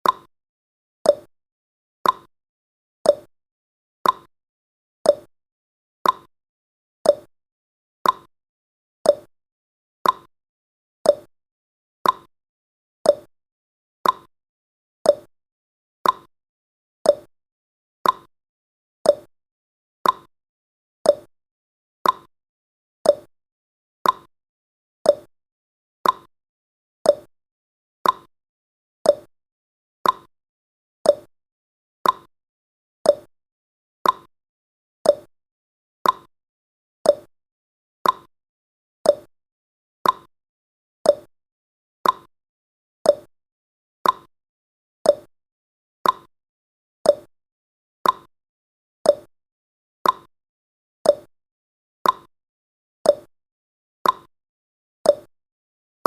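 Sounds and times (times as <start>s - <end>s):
timer ticking: 0.0s - 0.3s, 1.1s - 1.3s, 2.0s - 2.3s, 3.1s - 3.3s, 4.0s - 4.3s, 5.1s - 5.3s, 6.0s - 6.3s, 7.1s - 7.3s, 8.0s - 8.3s, 9.1s - 9.3s, 10.0s - 10.3s, 11.1s - 11.3s, 12.0s - 12.3s, 13.1s - 13.3s, 14.0s - 14.3s, 15.1s - 15.3s, 16.0s - 16.3s, 17.1s - 17.3s, 18.0s - 18.3s, 19.1s - 19.3s, 20.0s - 20.3s, 21.1s - 21.3s, 22.0s - 22.3s, 23.0s - 23.3s, 24.0s - 24.3s, 25.1s - 25.3s, 26.0s - 26.3s, 27.1s - 27.3s, 28.0s - 28.3s, 29.0s - 29.3s, 30.0s - 30.3s, 31.0s - 31.3s, 32.0s - 32.3s, 33.1s - 33.3s, 34.0s - 34.3s, 35.0s - 35.3s, 36.0s - 36.3s, 37.1s - 37.3s, 38.0s - 38.3s, 39.1s - 39.3s, 40.0s - 40.3s, 41.1s - 41.3s, 42.0s - 42.3s, 43.1s - 43.3s, 44.0s - 44.3s, 45.1s - 45.3s, 46.0s - 46.3s, 47.1s - 47.3s, 48.0s - 48.3s, 49.1s - 49.3s, 50.0s - 50.3s, 51.1s - 51.3s, 52.0s - 52.3s, 53.1s - 53.3s, 54.0s - 54.3s, 55.1s - 55.3s.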